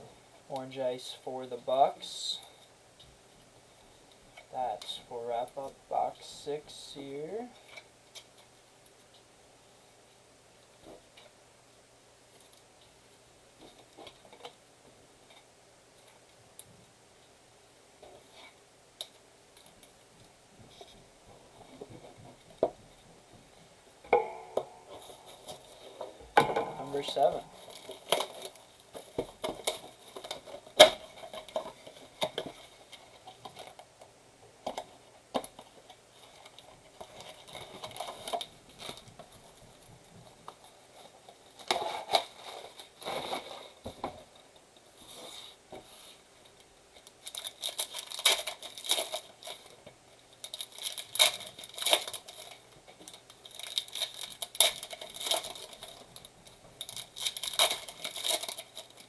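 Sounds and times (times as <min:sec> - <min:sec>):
plastic wrap and foil crinkling: 0:18.0 - 0:59.0
cards and packaging rustling: 0:24.1 - 0:33.8, 0:47.0 - 0:59.0.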